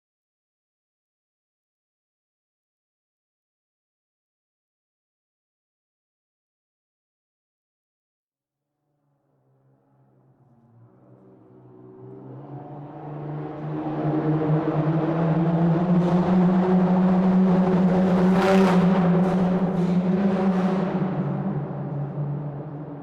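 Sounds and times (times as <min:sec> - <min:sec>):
car engine and tyre drone in tunnel: 0:08.8 - 0:23.0.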